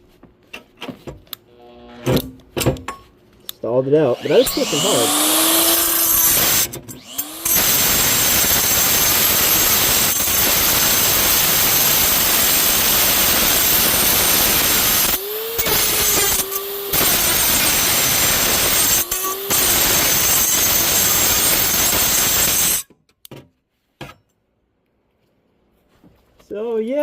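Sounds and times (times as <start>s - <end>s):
motor whine spinning free: 4.0s - 22.5s
cut-off tool grinding steel: 4.0s - 22.9s.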